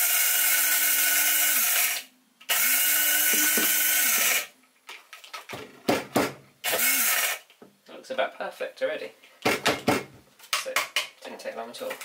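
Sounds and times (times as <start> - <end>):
coffee grinder grinding beans: 0.0 - 4.5.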